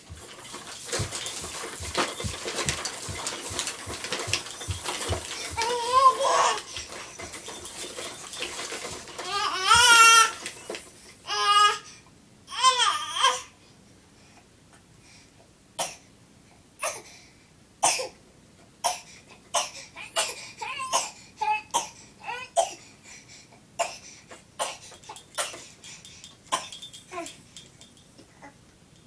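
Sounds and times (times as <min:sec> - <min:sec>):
baby fake coughing: 0:17.8 - 0:18.2, 0:18.8 - 0:22.8, 0:24.6 - 0:25.7, 0:26.5 - 0:26.8.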